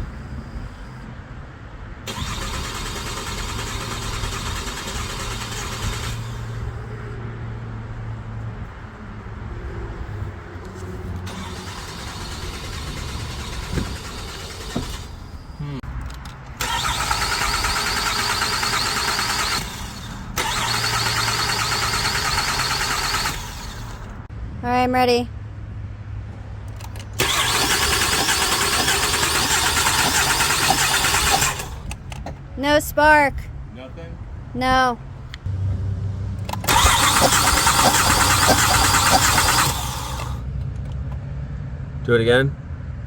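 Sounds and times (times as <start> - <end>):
starter cranking engine: 2.1 - 6.9, 11.3 - 24.2, 26.8 - 32.2, 36.4 - 40.5.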